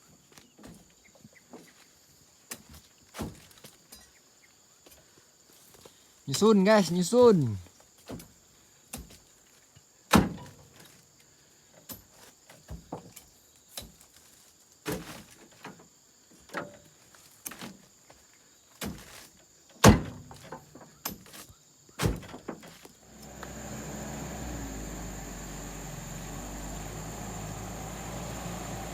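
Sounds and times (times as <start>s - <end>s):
heavy thuds of fruit bunches thrown: 2.5s - 3.8s, 14.8s - 15.5s, 18.8s - 21.4s, 22.0s - 22.9s.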